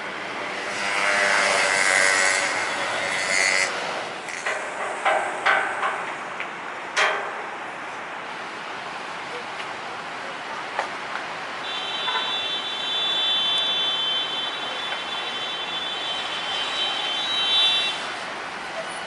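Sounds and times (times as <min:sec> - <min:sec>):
sharp knocks: 0:04.3 - 0:07.5.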